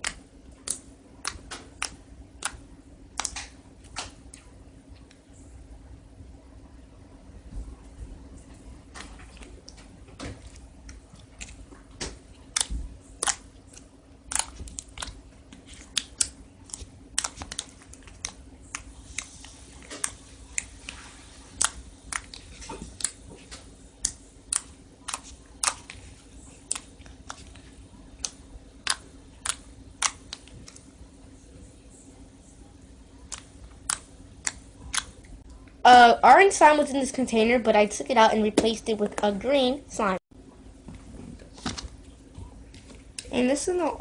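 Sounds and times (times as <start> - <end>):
slime clicking and popping: 0.0 - 4.2, 12.5 - 20.7, 21.6 - 23.2, 24.0 - 26.0, 28.2 - 30.8, 33.3 - 35.2.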